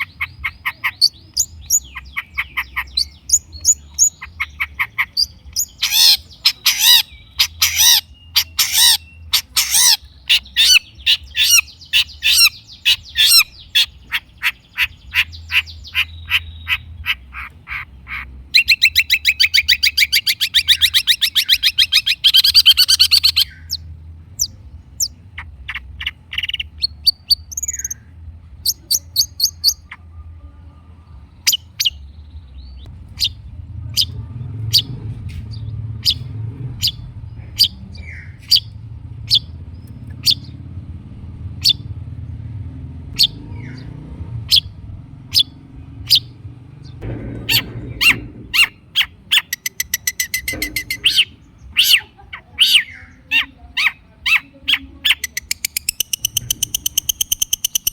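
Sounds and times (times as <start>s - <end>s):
fast rattling bird trill: 0.0s - 23.8s, 24.4s - 28.0s, 47.5s - 57.9s
shrike singing: 0.0s - 34.1s, 43.2s - 57.9s.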